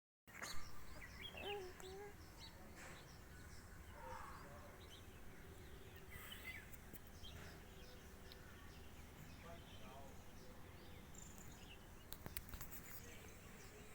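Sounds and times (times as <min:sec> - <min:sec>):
faint outdoor background noise: 0:00.3 - 0:13.9
short bird chirps: 0:06.0 - 0:07.5.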